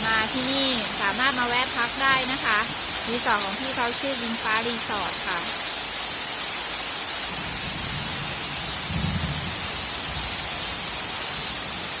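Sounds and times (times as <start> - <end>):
heavy rain falling: 0.0 - 12.0
thunder rumble: 7.3 - 12.0.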